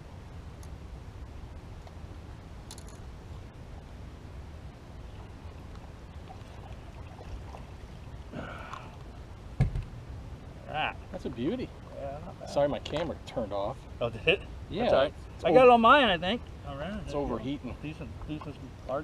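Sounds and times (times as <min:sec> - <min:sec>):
sharp knock: 0:09.6 - 0:09.9.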